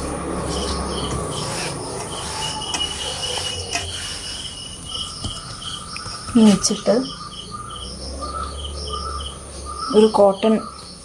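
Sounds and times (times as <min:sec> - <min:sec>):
crickets chirping: 0:00.2 - 0:11.0.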